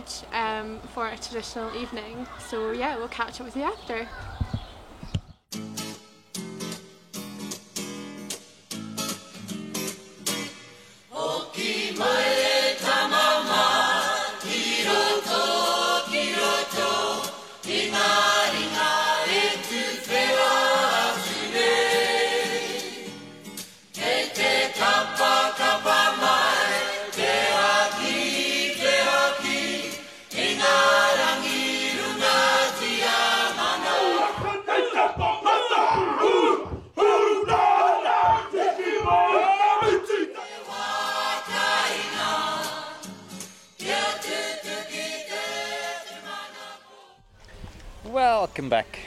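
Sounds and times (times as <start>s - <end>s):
group singing together: 11.1s - 47.6s.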